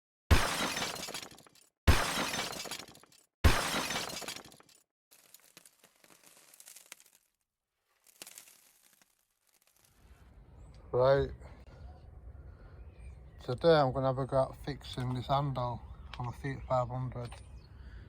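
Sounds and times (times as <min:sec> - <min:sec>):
glass shattering: 0:00.3 - 0:07.3, 0:08.0 - 0:09.9
faint tinkling crackles: 0:08.0 - 0:10.2.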